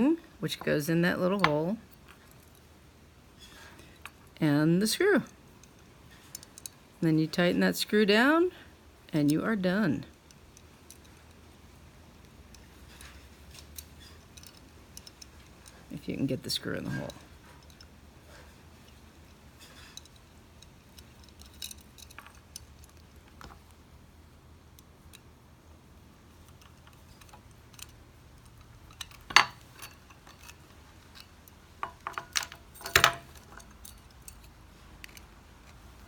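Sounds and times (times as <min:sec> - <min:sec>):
small metal lock parts clinking: 0:05.0 - 0:06.9, 0:10.0 - 0:23.9, 0:26.2 - 0:36.0.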